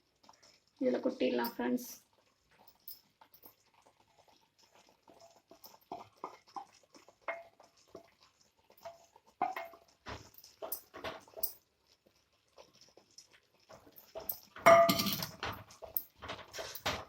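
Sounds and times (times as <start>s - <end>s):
spoon stirring and scraping pan: 0.0s - 17.0s
spoon knocks on pan: 14.6s - 15.3s.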